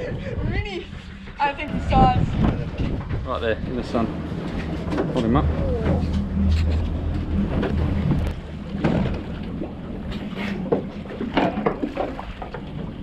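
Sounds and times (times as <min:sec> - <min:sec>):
wind on microphone: 0:00.0 - 0:10.2
boat engine idling: 0:02.8 - 0:13.0.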